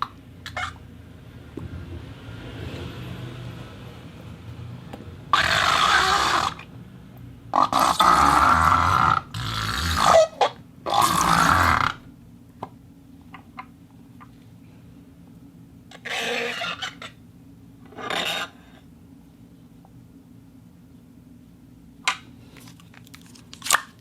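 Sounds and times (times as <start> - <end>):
rasping squelchy bursts: 5.3 - 6.7.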